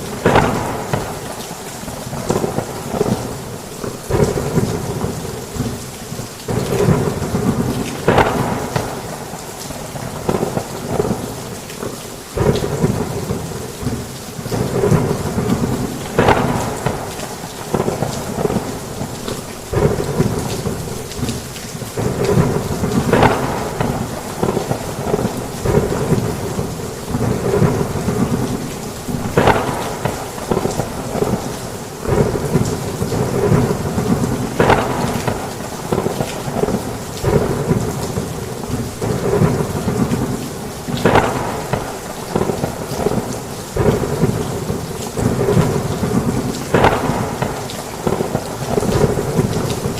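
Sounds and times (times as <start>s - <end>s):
thunder crack: 0.0s - 1.4s, 6.5s - 9.4s, 14.5s - 19.1s, 19.7s - 21.4s, 22.0s - 49.9s
thunder rumbling: 0.0s - 5.9s, 6.5s - 11.5s, 12.4s - 49.9s
heavy rain on a roof: 0.0s - 49.9s.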